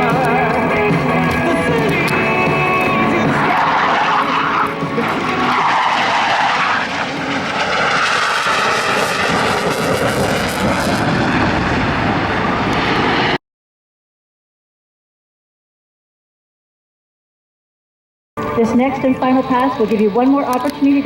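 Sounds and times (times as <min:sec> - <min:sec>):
jet engines flying past: 0:00.0 - 0:13.4, 0:18.4 - 0:21.0.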